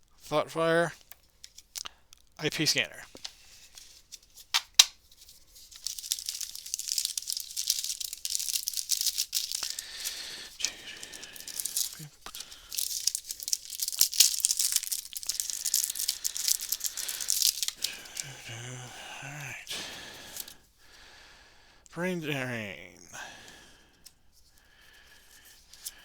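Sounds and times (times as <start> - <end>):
wrapper crinkling and tearing: 3.2 - 20.6.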